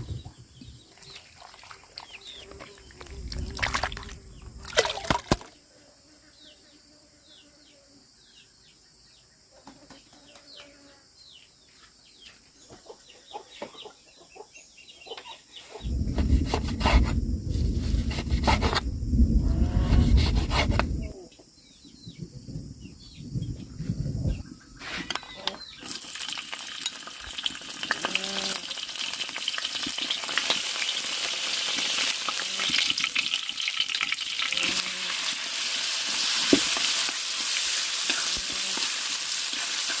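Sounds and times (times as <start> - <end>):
loud rough rubbing noise: 15.8 - 21.1.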